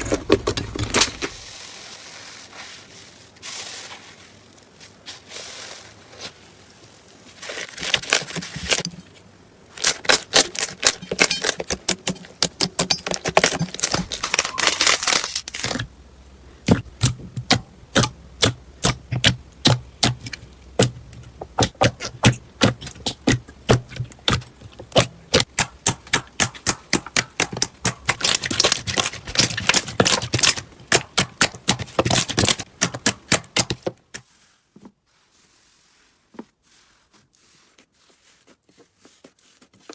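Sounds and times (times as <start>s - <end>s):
slime clicking and popping: 25.0s - 33.7s.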